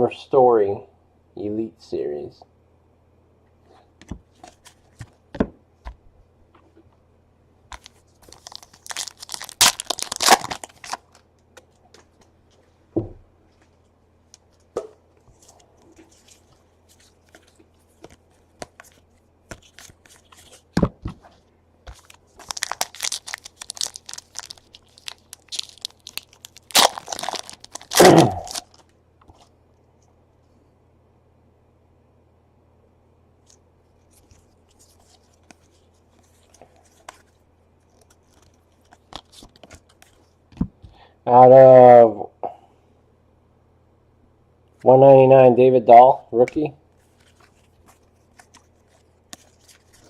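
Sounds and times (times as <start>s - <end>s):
card wrappers tearing and crinkling: 7.7s - 11.2s, 15.4s - 20.8s, 21.9s - 28.9s, 34.1s - 40.2s, 47.0s - 50.0s.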